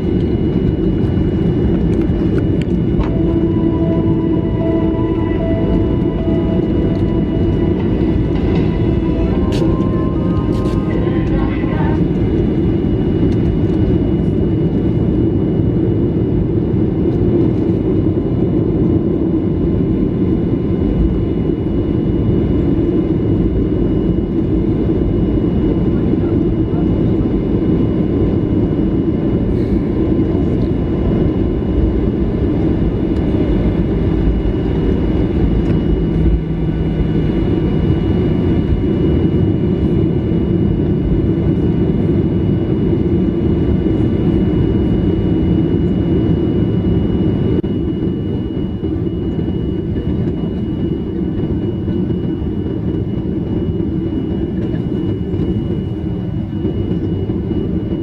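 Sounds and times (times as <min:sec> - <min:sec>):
aircraft cabin engine rumble: 0:00.0 - 0:58.0
faint steady whine: 0:01.9 - 0:13.8, 0:29.5 - 0:50.6.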